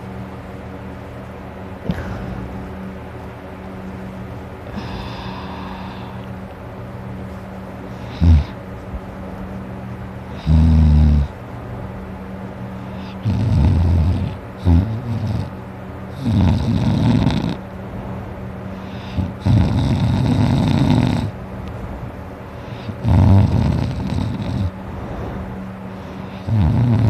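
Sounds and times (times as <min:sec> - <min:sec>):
steady low hum: 0:00.0 - 0:27.0
person snoring loudly: 0:04.7 - 0:06.2, 0:08.1 - 0:08.6, 0:10.4 - 0:11.3, 0:13.0 - 0:15.5, 0:16.2 - 0:17.6, 0:18.8 - 0:21.3, 0:22.8 - 0:24.7, 0:26.2 - 0:27.0.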